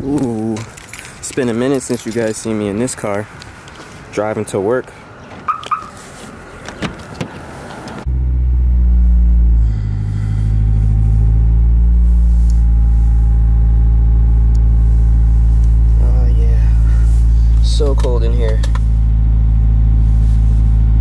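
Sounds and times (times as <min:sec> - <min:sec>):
car engine starting and idling: 0:05.5 - 0:21.0.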